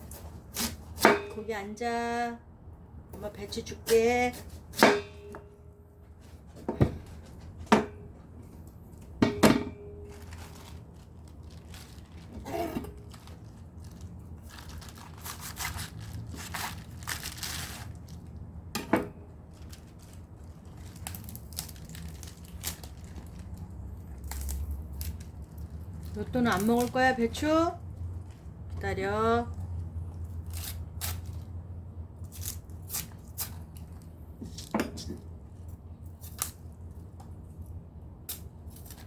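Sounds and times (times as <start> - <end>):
crackly leaf tearing: 10.1 - 18.4, 19.5 - 27.2, 29.5 - 31.5, 32.2 - 34.1
cabbage being cut: 11.9 - 13.4, 14.5 - 18.0.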